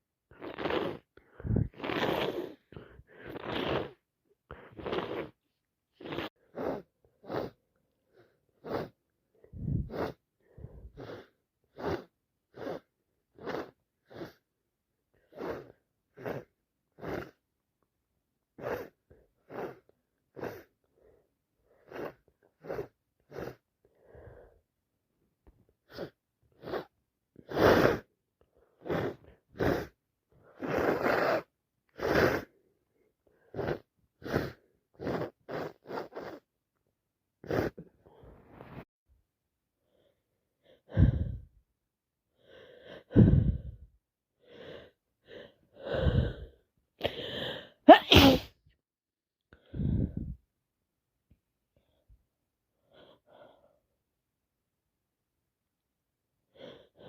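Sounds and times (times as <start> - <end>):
person sniffing: 0.3 - 5.4, 6.0 - 14.5, 15.2 - 17.4, 18.6 - 24.5, 25.8 - 28.1, 28.7 - 32.7, 33.4 - 36.5, 37.4 - 38.8, 40.8 - 41.5, 42.6 - 43.8, 44.5 - 48.6
person sneezing: 47.0 - 48.6.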